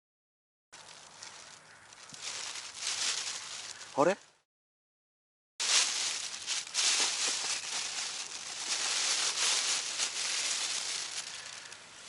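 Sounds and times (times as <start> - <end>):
bag rustling and crinkling: 0.8 - 4.0, 5.6 - 12.0.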